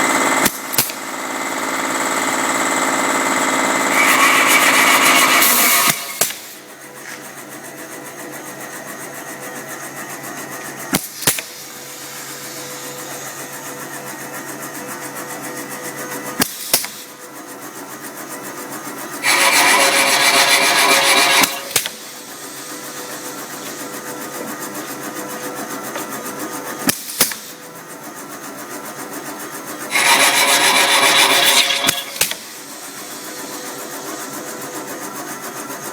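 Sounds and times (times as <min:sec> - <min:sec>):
woodworking machine running: 0:00.0 - 0:07.0, 0:18.9 - 0:23.5, 0:29.5 - 0:33.5
electric motor humming: 0:03.7 - 0:06.4, 0:19.2 - 0:22.0, 0:29.9 - 0:32.4
heavy cutting sound: 0:03.7 - 0:06.6, 0:19.2 - 0:22.0, 0:29.9 - 0:32.5
bit rasping into wood: 0:03.9 - 0:06.4, 0:19.2 - 0:22.0, 0:29.9 - 0:32.4.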